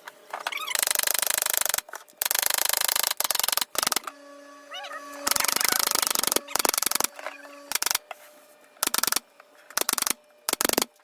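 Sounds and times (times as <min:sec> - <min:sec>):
power tool hammering: 0:02.3 - 0:08.0.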